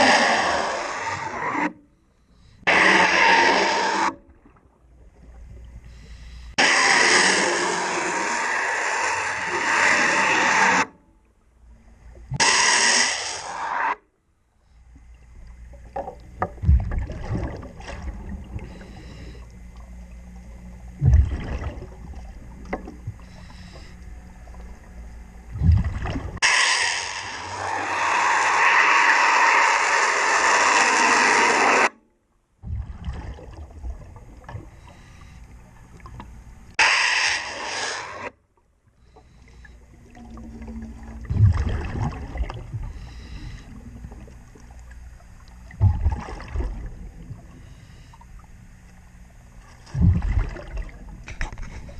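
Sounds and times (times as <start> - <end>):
underwater knocks and scraping: 15.3 - 20.0, 20.8 - 24.9, 39.2 - 47.6, 49.6 - 51.9
regulator bubbles rushing: 15.7 - 18.9, 20.8 - 23.3, 24.7 - 26.4, 32.6 - 34.8, 39.6 - 47.6, 49.8 - 51.8.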